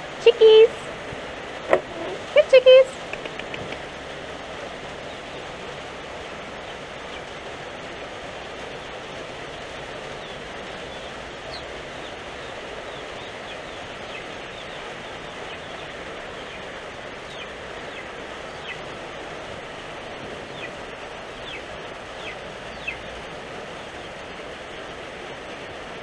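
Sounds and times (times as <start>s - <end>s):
heavy rain: 0.0s - 26.0s
chicks peeping: 9.8s - 18.9s, 20.5s - 23.2s.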